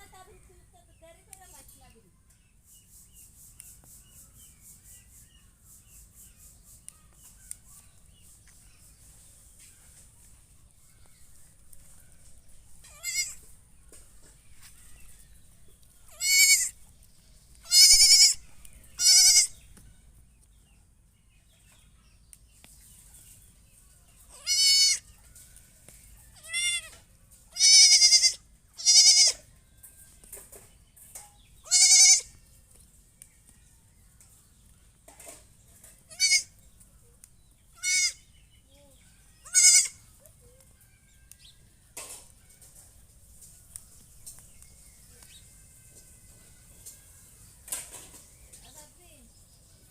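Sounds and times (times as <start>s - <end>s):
goat bleating: 12.8s - 13.4s, 16.1s - 16.8s, 17.6s - 18.4s, 19.0s - 19.6s, 24.3s - 25.0s, 26.4s - 26.9s, 27.5s - 29.5s, 31.6s - 32.3s, 36.1s - 36.6s, 37.8s - 38.2s, 39.4s - 40.1s.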